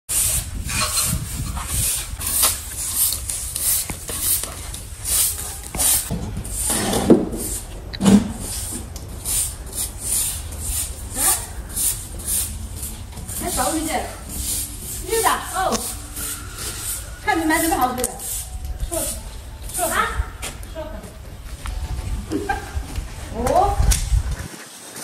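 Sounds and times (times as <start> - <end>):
rubbing or scraping strokes: 0.1 - 25.0
low rumble: 6.2 - 24.5.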